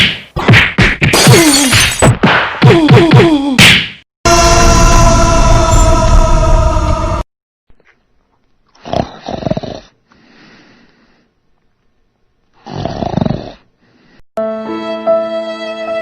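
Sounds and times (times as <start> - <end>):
person snoring: 8.8 - 9.9, 12.6 - 13.7.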